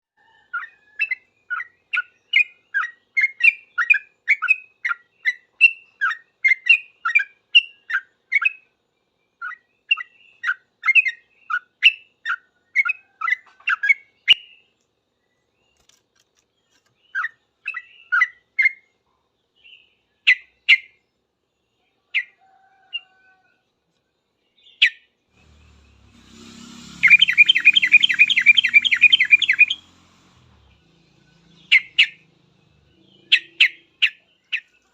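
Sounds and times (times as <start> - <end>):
fast chattering bird trill: 26.5 - 29.9
bird singing bubbly notes: 27.0 - 29.9.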